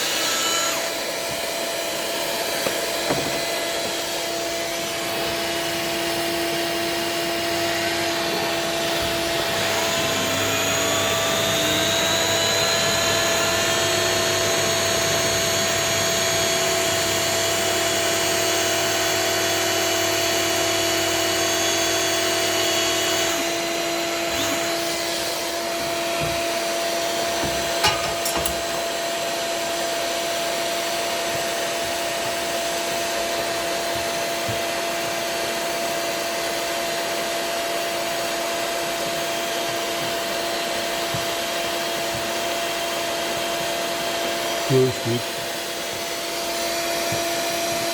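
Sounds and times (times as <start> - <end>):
hot-air blower humming: 0.0 - 47.9
extruder drive motor: 2.4 - 27.8.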